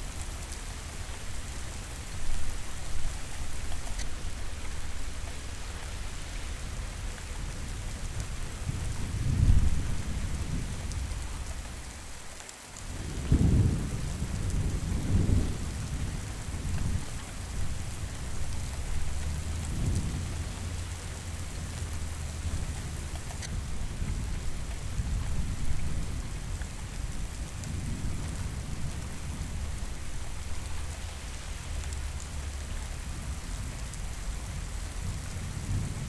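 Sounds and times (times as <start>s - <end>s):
steady rain: 0.0s - 36.0s
rolling thunder: 8.6s - 11.2s, 12.9s - 21.7s.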